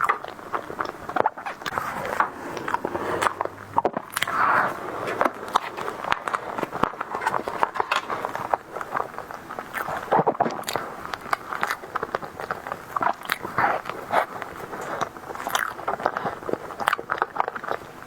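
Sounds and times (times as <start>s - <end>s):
chewing soft dessert: 0.0s - 18.0s
wet mouth clicks: 2.5s - 4.8s, 9.3s - 17.8s.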